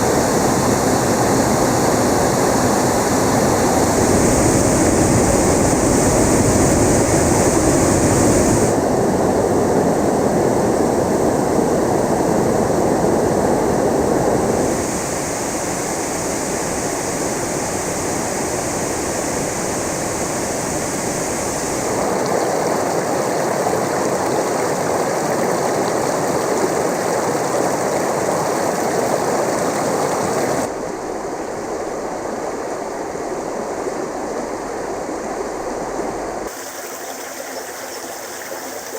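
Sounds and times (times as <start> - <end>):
stream water rushing and splashing: 0.0 - 9.0, 14.6 - 31.6, 36.5 - 38.9.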